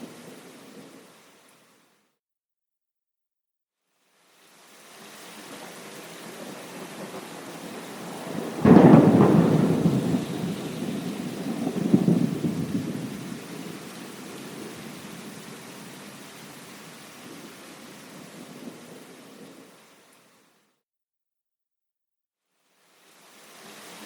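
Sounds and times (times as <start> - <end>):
steady rain: 0.0 - 2.1, 3.9 - 20.7, 22.6 - 24.0
rumbling thunder: 6.2 - 16.0.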